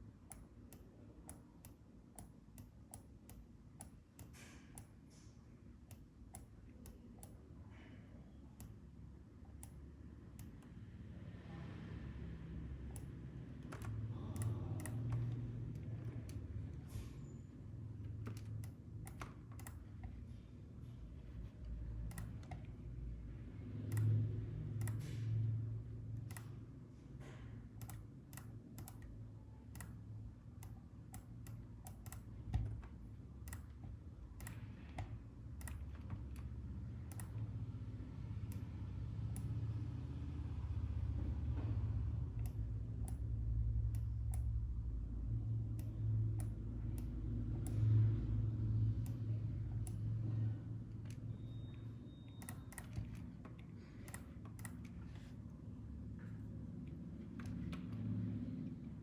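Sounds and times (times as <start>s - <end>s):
keyboard and mouse clicks: 0.2s - 5.0s, 12.9s - 17.1s, 18.0s - 20.2s, 21.4s - 22.8s, 23.8s - 25.4s, 26.1s - 26.6s, 27.7s - 37.6s, 42.3s - 44.6s, 45.6s - 48.2s, 48.8s - 55.5s, 56.2s - 58.4s
low hum: 7.2s - 59.0s.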